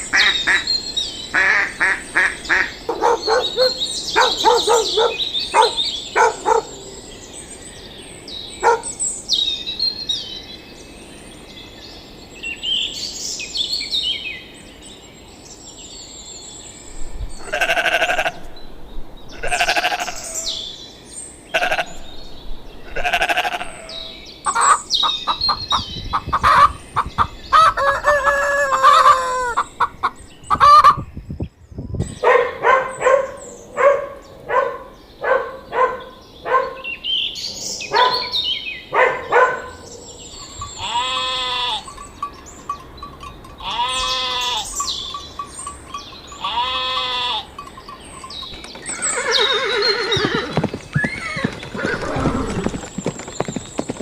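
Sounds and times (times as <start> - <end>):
chickens clucking: 24.5 - 31.0
rooster crowing: 27.5 - 29.7.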